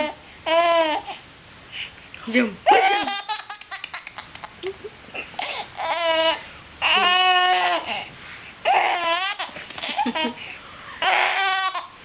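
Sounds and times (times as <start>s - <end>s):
baby making high-pitched sounds: 5.4s - 8.0s.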